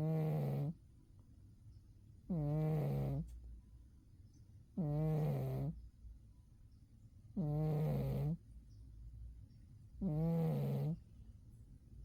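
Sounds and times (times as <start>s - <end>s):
cat snoring: 0.0s - 0.8s, 2.3s - 3.3s, 4.8s - 5.8s, 7.4s - 8.4s, 10.0s - 11.0s.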